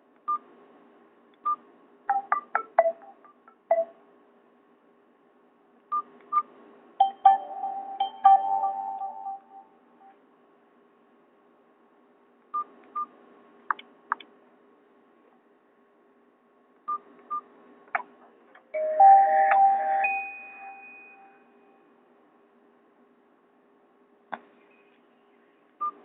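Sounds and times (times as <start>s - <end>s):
phone ringtone: 7.0s - 9.8s, 18.8s - 21.4s.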